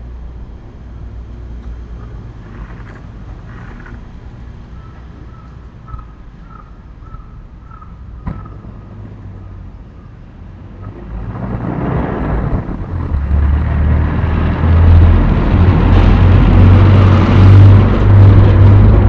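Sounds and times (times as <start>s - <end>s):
vehicle engine rumble: 0.0s - 19.0s
faint bird chirps: 4.7s - 8.6s.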